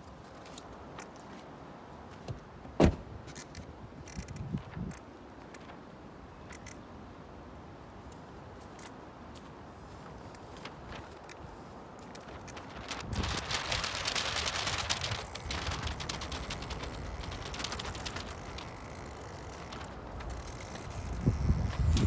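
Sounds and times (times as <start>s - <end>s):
small clicks: 6.5s - 6.8s, 12.0s - 22.0s
strong wind on microphone: 12.7s - 18.8s, 20.0s - 22.0s.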